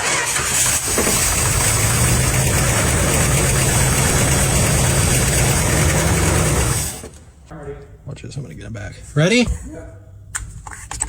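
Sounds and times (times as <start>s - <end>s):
car engine running: 0.3s - 7.2s.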